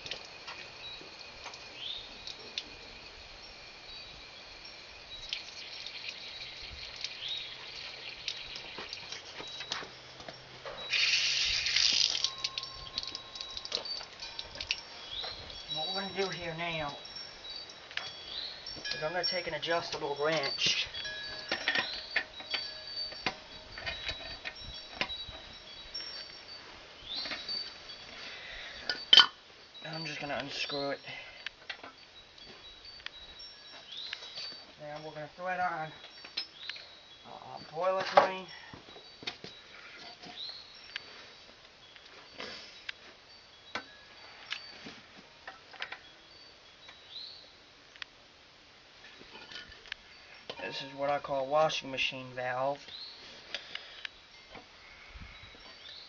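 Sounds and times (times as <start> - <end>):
water hissing and dripping: 0.0 - 34.5
thin high metallic ringing: 7.2 - 47.4, 49.0 - 53.4.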